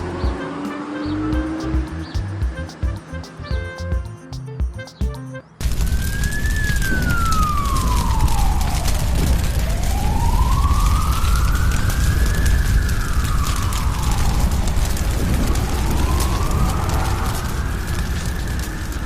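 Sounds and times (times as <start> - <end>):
siren wailing: 5.4 - 19.0.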